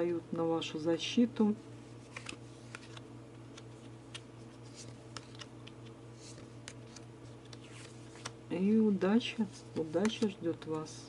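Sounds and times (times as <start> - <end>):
cards clicking and tapping: 2.1 - 8.4, 9.7 - 10.4.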